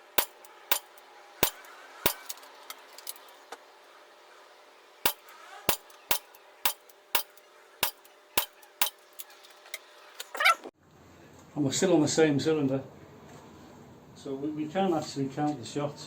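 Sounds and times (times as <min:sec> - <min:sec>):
air pistol shots cracking: 0:00.0 - 0:02.5, 0:05.1 - 0:09.3.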